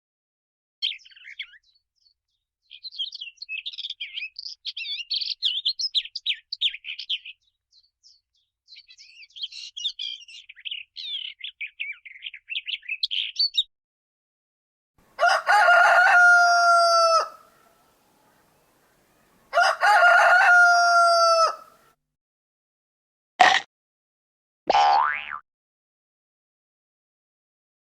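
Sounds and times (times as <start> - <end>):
songbirds chirping: 0.8 - 13.7, 15.0 - 21.9
rooster crowing: 15.1 - 21.8.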